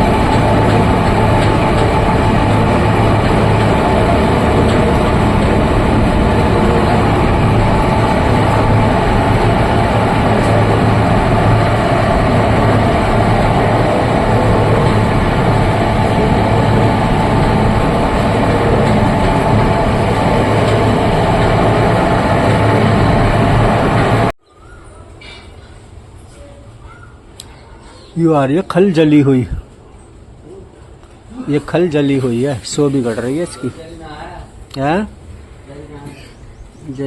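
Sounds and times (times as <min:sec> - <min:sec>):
oil press mechanical drone: 0:00.0 - 0:24.3.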